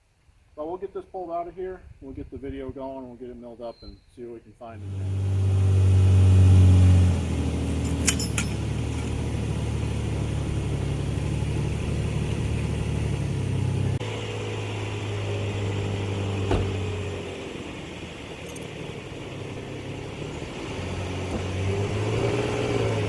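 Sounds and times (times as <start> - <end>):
vehicle engine under load: 4.8 - 23.0.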